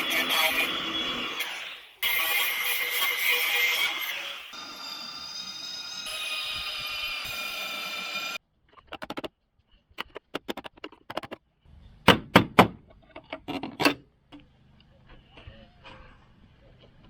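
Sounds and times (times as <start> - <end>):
sharp clicks and knocks: 8.7 - 9.4, 10.0 - 11.4.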